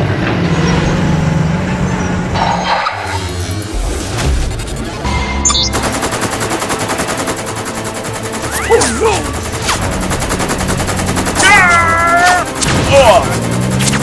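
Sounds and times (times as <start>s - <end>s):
cartoon automatic gunfire: 5.7s - 14.0s.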